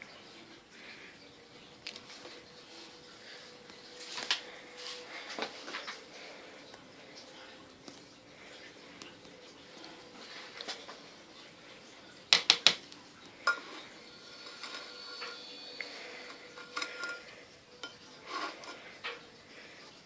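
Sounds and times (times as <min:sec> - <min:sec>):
spoon clinking on baking pan: 0:13.4 - 0:13.8
spoon scraping: 0:13.4 - 0:19.4.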